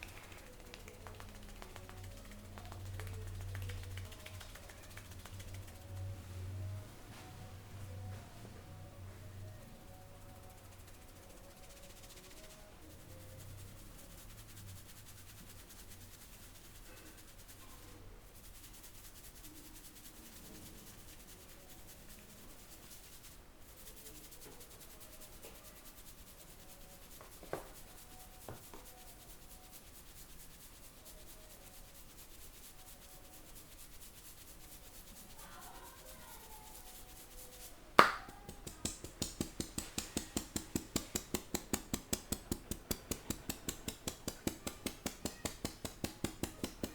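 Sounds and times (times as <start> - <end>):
rapid rhythmic hand strikes: 0.0 - 6.2, 36.7 - 46.9
hands rubbing during massage: 0.0 - 46.9.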